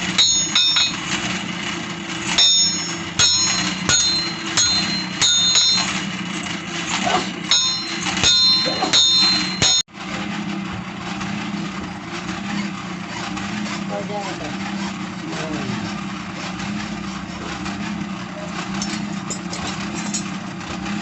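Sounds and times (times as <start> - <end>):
hammer striking blade on anvil: 0.0 - 1.2, 2.3 - 6.1, 6.9 - 9.9
steady low hum: 2.0 - 9.9.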